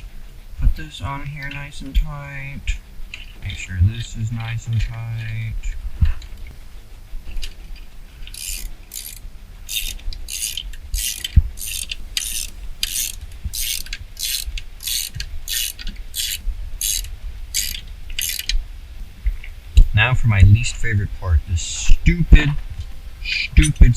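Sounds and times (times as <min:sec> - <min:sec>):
hand ratchet clicking: 0:08.3 - 0:18.5.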